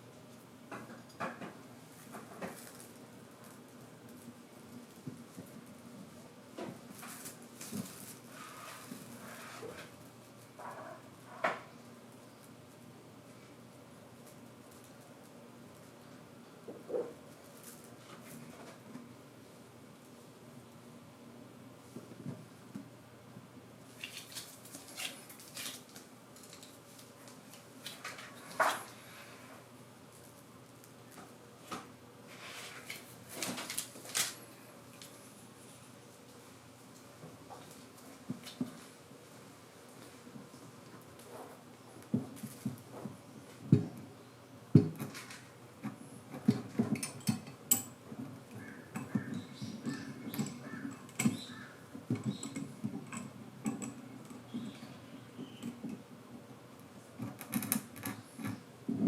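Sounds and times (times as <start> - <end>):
hand tools knocking and tapping: 45.8 - 54.8.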